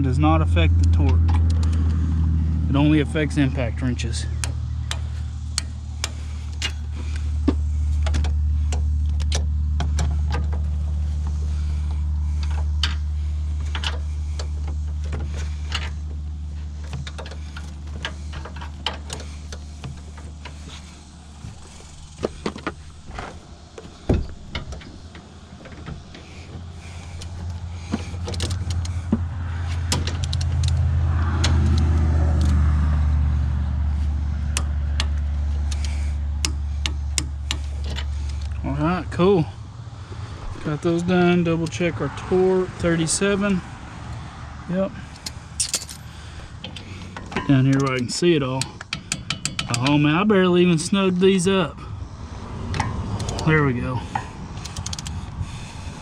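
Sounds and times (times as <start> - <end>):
steady low drone: 0.0 - 56.0
ratchet and torque wrench clicks: 29.8 - 32.6, 46.6 - 50.1, 52.8 - 53.5, 54.6 - 55.2.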